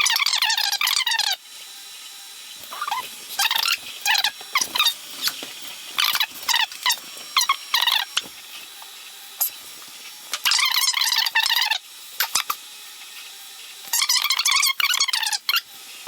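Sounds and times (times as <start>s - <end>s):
stepper motors whining: 0.0s - 16.0s.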